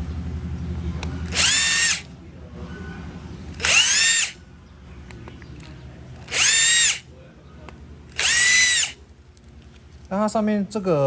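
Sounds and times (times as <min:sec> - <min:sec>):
power driver whining: 0:01.2 - 0:02.1, 0:03.5 - 0:04.4, 0:06.2 - 0:07.0, 0:08.1 - 0:09.0.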